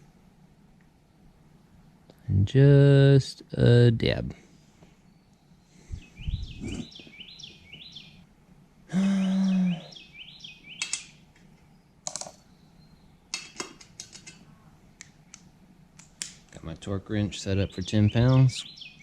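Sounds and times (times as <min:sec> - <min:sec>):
loud steady hum: 0:00.0 - 0:10.1
bird chirping: 0:05.0 - 0:08.3, 0:09.0 - 0:13.4, 0:17.2 - 0:19.0
sharp clicks: 0:10.8 - 0:12.4.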